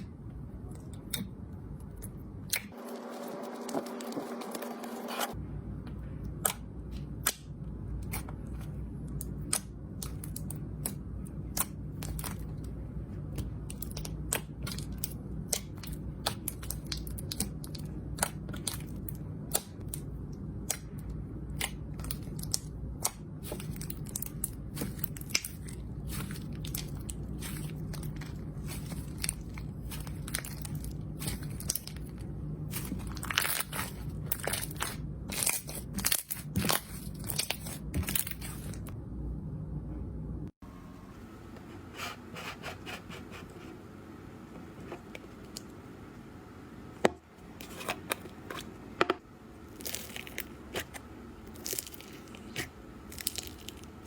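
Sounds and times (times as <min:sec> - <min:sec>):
steady low hum: 0:00.0 - 0:54.0
slime crackling and popping: 0:13.3 - 0:38.9, 0:49.7 - 0:54.0.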